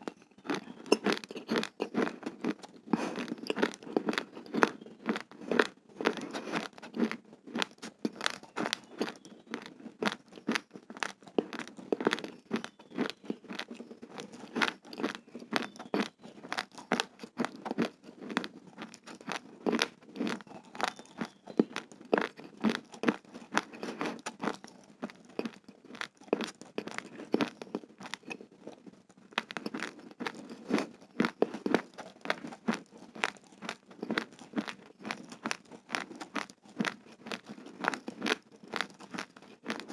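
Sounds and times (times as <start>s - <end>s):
chewing raw rice grains: 0.0s - 39.9s.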